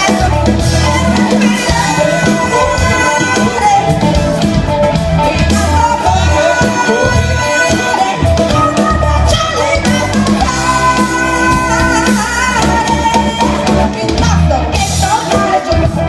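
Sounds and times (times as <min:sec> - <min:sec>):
live band playing pop song: 0:00.0 - 0:16.0
person singing: 0:00.0 - 0:16.0.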